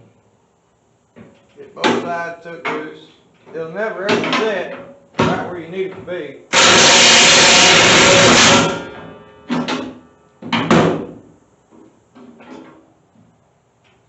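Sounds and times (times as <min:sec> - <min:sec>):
impact wrench hammering: 0:06.5 - 0:11.2
faint metal clanks: 0:08.8 - 0:14.0.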